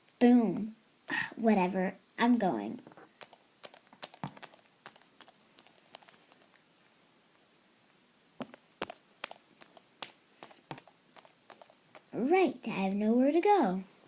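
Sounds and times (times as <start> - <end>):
plastic toy figures clicking: 3.2 - 6.6, 8.4 - 12.2.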